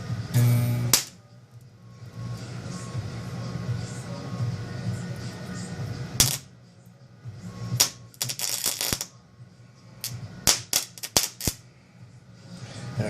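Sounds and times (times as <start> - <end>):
transformer low hum: 0.0 - 13.0
electric arcing cracks: 0.4 - 1.2, 6.2 - 6.5, 7.8 - 9.1, 10.0 - 11.6.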